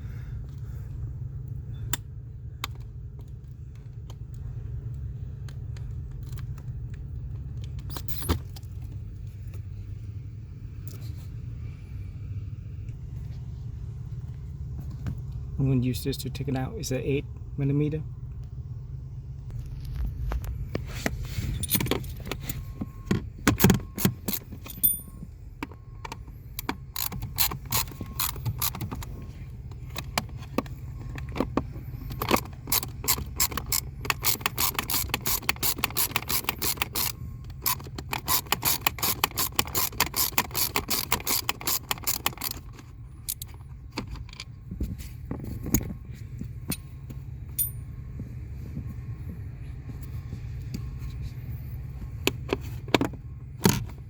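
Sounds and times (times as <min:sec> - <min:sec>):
steady low hum: 0:00.0 - 0:54.0
ratchet wrench clicking: 0:26.6 - 0:29.1, 0:32.0 - 0:43.5.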